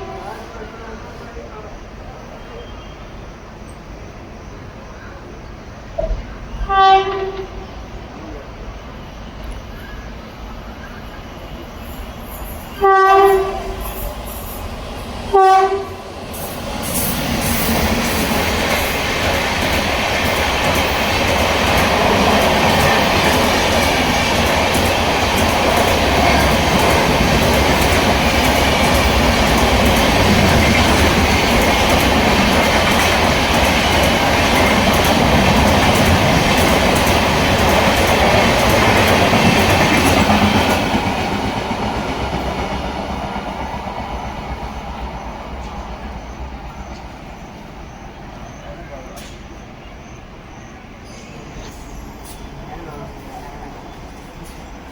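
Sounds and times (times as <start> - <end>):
train coaches rattling over rails: 0.0 - 54.9
locomotive horn blasts: 6.6 - 7.6, 12.8 - 13.8, 15.3 - 16.0.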